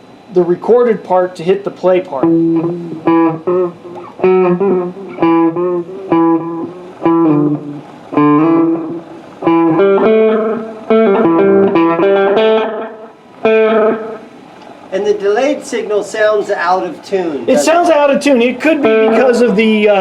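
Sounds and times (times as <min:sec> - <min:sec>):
electric guitar with echo: 0:02.1 - 0:14.8, 0:18.6 - 0:20.0.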